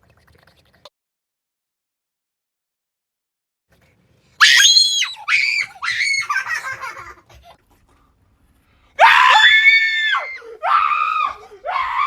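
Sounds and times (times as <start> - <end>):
person screaming high-pitched: 4.4 - 6.4.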